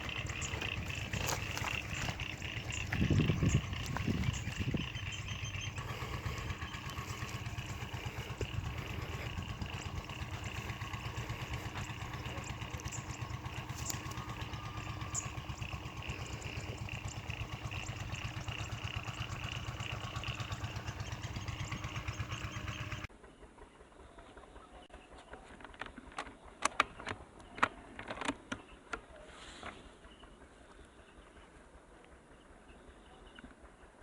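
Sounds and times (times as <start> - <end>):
small engine running: 0.0 - 24.7.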